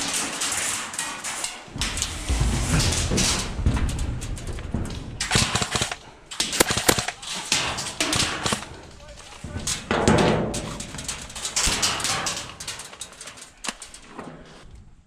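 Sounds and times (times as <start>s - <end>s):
airsoft guns firing rapid bursts: 5.3s - 7.2s, 8.2s - 8.7s.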